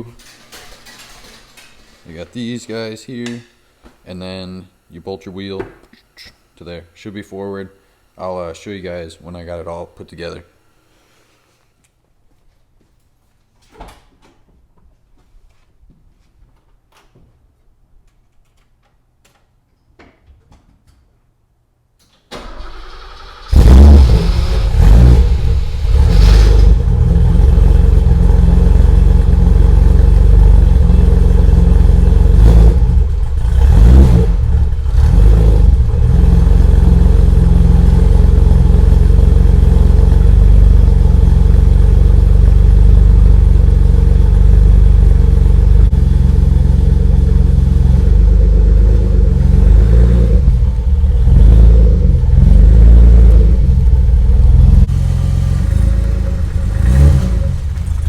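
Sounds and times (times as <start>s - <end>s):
car engine cranking and idling: 22.4s - 58.0s.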